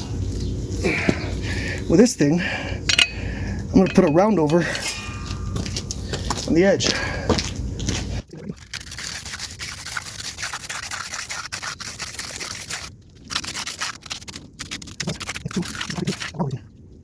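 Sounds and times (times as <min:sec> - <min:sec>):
edging tool scraping concrete: 0:02.9 - 0:06.5, 0:08.4 - 0:16.4.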